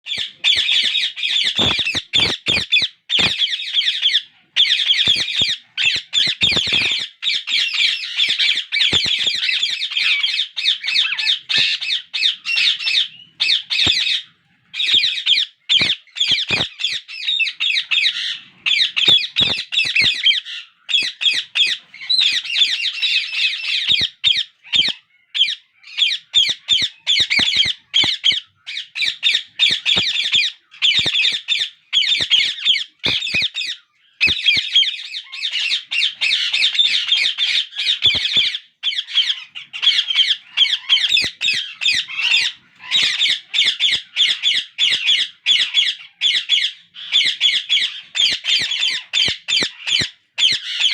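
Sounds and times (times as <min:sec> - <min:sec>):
parakeet chicks begging calls: 0:00.1 - 0:50.9
sharp clicks: 0:01.6 - 0:03.3, 0:33.0 - 0:33.5.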